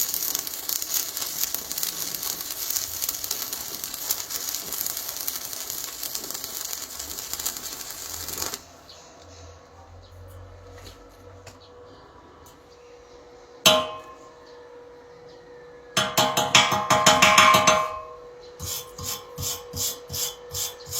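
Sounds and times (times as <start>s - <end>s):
arc welding crackling: 0.0s - 8.9s, 18.6s - 20.9s.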